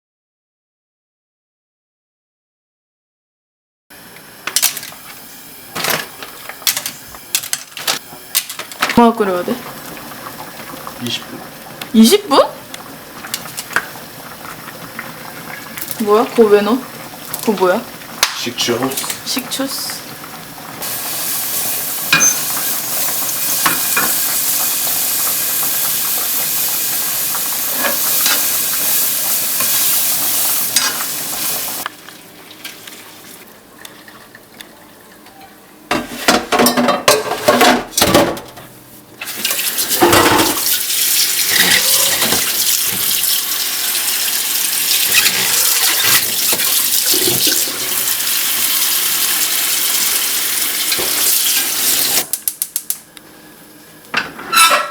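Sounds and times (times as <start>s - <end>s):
food hissing on stove: 19.0s - 31.8s, 40.6s - 52.3s
cookware clattering and knocking: 35.9s - 38.4s, 40.0s - 40.6s, 54.2s - 54.9s.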